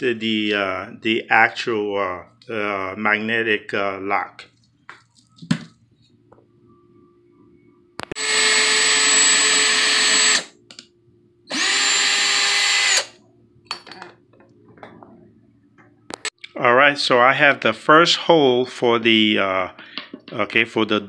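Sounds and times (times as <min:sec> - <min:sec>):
electric drill whine: 0:08.1 - 0:10.5, 0:11.5 - 0:13.2.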